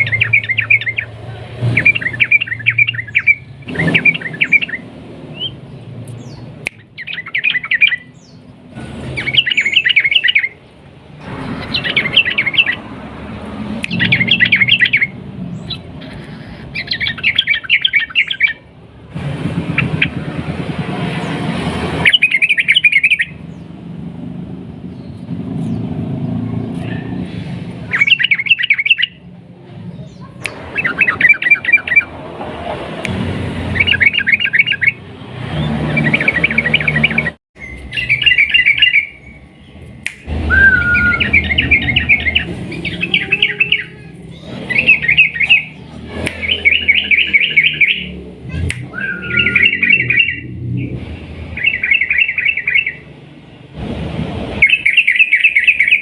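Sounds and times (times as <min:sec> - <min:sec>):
bird chattering trills: 0:00.0 - 0:12.9, 0:13.8 - 0:18.6, 0:22.0 - 0:23.6, 0:27.8 - 0:29.2, 0:33.7 - 0:35.0, 0:35.6 - 0:53.0, 0:54.6 - 0:56.0
short falling whistles: 0:40.4 - 0:41.4.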